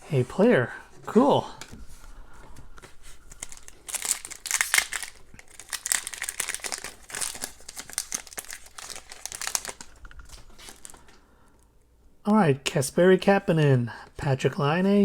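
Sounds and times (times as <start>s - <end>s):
card pack wrapper tearing: 3.4s - 10.9s.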